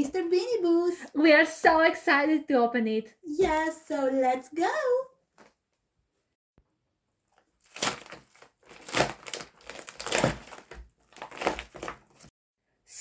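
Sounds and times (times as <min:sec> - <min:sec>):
packaging rustling: 0:07.3 - 0:12.3.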